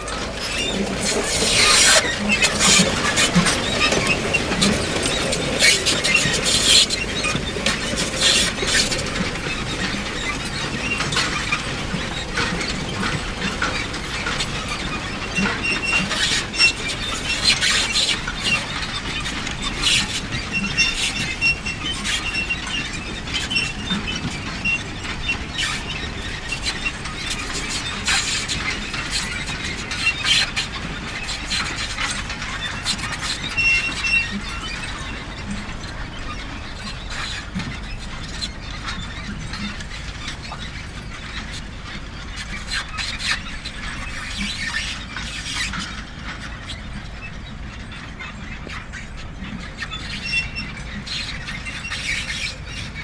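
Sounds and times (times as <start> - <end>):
high squeaks: 0.0 - 39.6
manure spreader mechanism clattering: 0.0 - 46.5.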